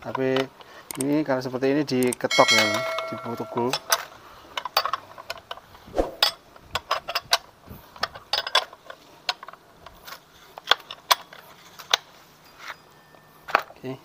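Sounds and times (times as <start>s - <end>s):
hand tools clinking on metal: 2.3s - 4.1s.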